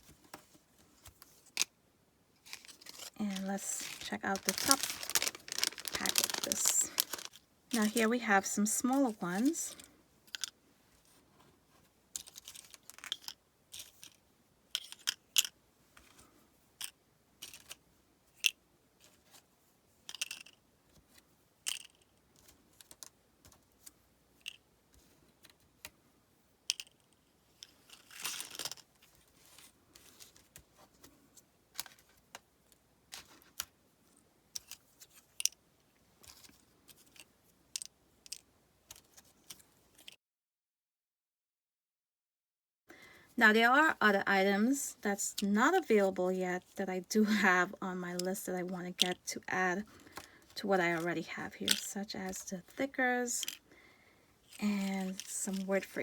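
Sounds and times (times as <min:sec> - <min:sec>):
sticker sheets clicking and crinkling: 0:02.4 - 0:08.1, 0:49.8 - 0:52.4, 0:54.5 - 0:55.7
rustle of packaging: 0:02.4 - 0:08.2, 0:54.5 - 0:55.7.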